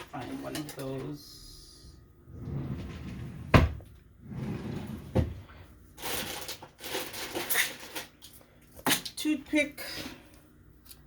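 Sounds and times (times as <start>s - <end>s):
cupboard doors knocking shut: 3.5s - 3.9s.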